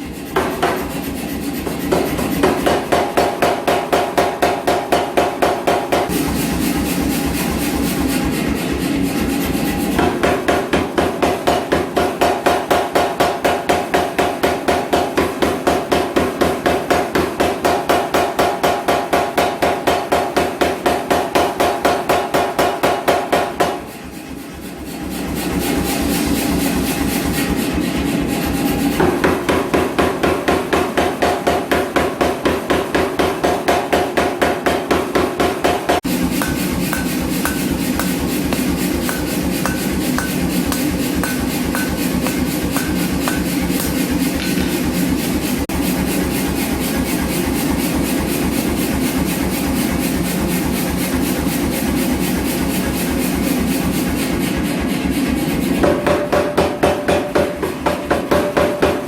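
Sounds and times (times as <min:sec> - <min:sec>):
power hammer striking hot steel: 0:00.2 - 0:07.8, 0:29.2 - 0:45.2.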